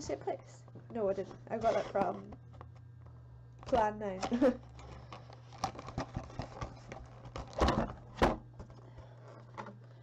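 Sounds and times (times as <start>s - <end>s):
packaging crinkling and clicking: 4.6s - 10.0s
loud packaging rustles: 4.8s - 8.1s.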